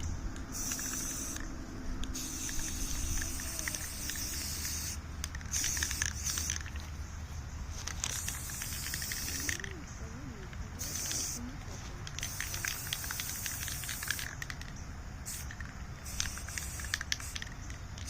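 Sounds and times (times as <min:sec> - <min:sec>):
spray paint can hissing: 0:00.3 - 0:07.0, 0:07.7 - 0:18.0.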